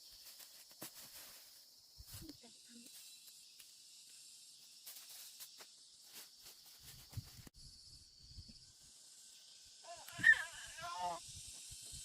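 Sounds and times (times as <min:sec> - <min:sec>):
soft rustles and clicks: 0:04.8 - 0:07.5.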